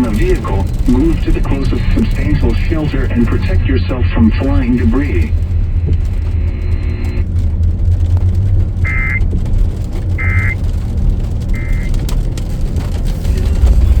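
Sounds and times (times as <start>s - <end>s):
low rumble: 0.0s - 14.0s
short buzzy data bursts: 10.2s - 10.6s, 11.6s - 11.9s.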